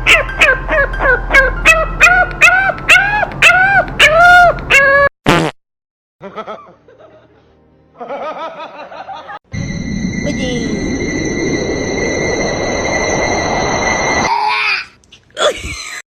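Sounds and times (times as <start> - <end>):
animal yelping: 0.0 - 5.1.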